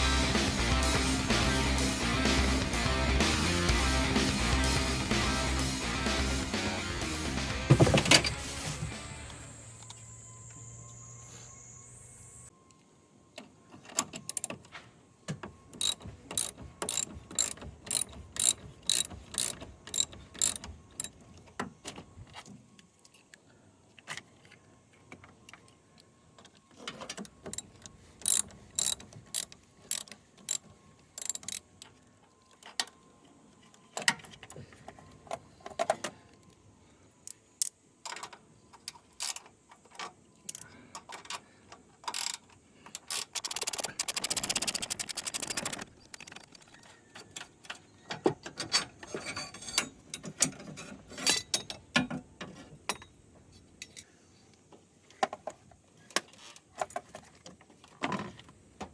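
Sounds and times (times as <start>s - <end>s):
ratchet wrench clicking: 15.8s - 21.1s, 27.5s - 30.6s, 31.2s - 31.7s, 42.0s - 46.6s.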